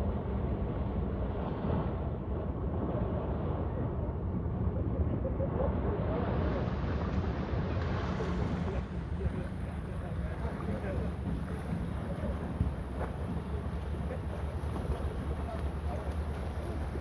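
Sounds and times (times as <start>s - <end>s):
sea waves at shore: 5.8s - 17.0s.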